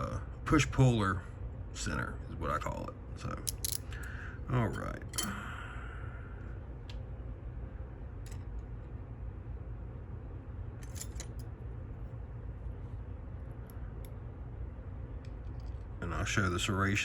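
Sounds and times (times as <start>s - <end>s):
air conditioner hum: 0.0s - 17.0s
metallic clicks of lock parts: 3.4s - 4.1s, 4.8s - 5.4s, 8.2s - 8.6s, 10.8s - 11.5s.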